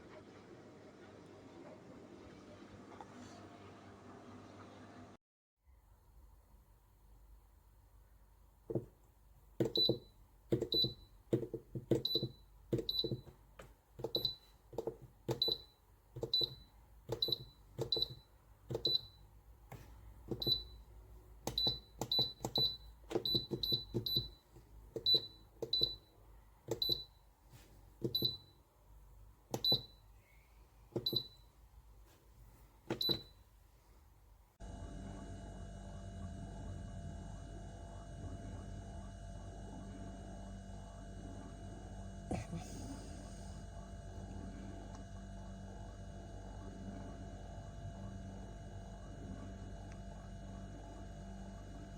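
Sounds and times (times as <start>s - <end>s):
keypad button clicks with beeps: 9.6s - 13.3s, 14.0s - 14.5s, 15.3s - 19.2s, 20.3s - 20.7s, 21.5s - 24.4s, 25.0s - 26.0s, 26.7s - 27.1s, 28.0s - 28.5s, 29.6s - 30.0s, 31.0s - 31.4s, 32.9s - 33.3s.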